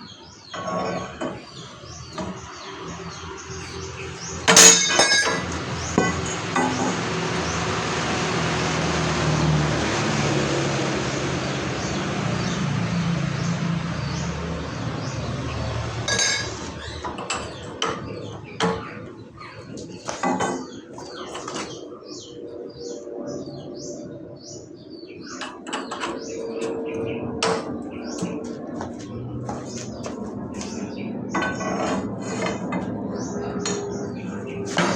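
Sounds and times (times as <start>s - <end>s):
metal parts knocking and clinking: 4.5s - 6.9s, 16.1s - 16.6s.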